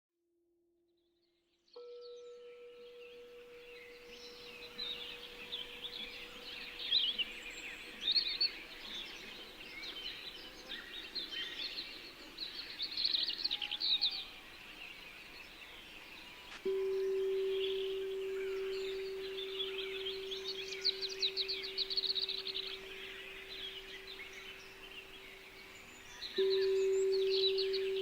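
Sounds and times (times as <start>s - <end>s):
singing bowl hum: 1.8s - 12.1s, 16.2s - 28.0s
songbirds chirping and trilling: 1.8s - 28.0s.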